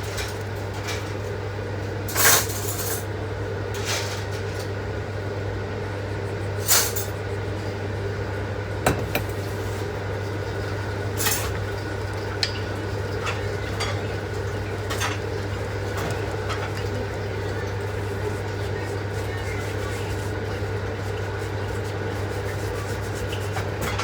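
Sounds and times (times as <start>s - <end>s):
utensils and dishes clinking: 2.1s - 3.1s, 8.9s - 9.5s, 11.2s - 17.8s.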